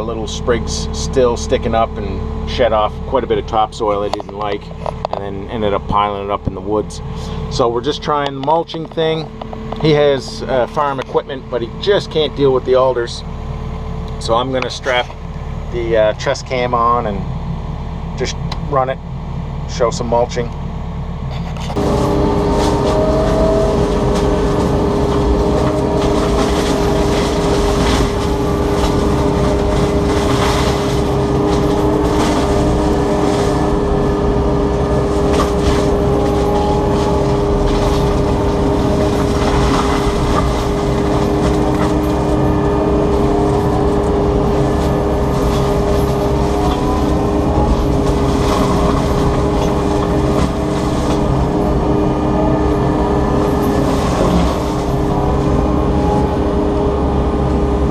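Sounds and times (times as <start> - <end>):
excavator mulcher running: 0.0 - 57.9
two-note whine: 0.0 - 57.9
wood crackling as chipped: 21.8 - 51.6.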